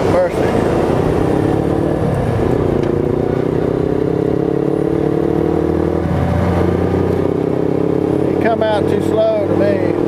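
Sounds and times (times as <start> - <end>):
motorcycle engine running: 0.0 - 10.0.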